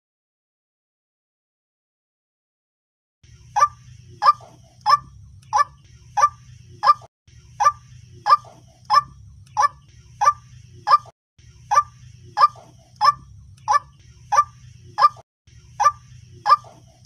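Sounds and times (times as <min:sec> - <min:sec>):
low hum: 0:03.2 - 0:17.0
waterhen calling: 0:03.6 - 0:11.1, 0:11.7 - 0:15.2, 0:15.8 - 0:16.8.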